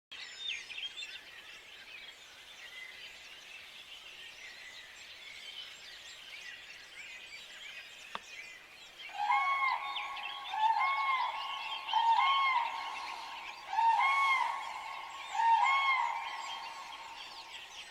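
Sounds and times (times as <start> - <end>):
songbirds chirping: 0.1 - 17.9
cranes calling: 9.1 - 17.8.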